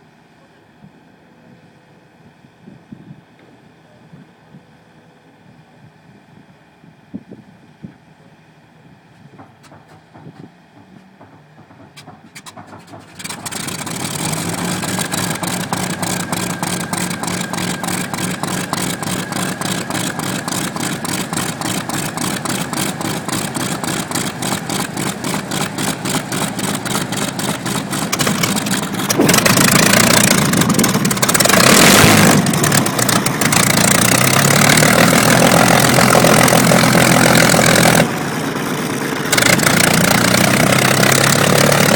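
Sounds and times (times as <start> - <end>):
piston aircraft engine starting: 9.6 - 41.9.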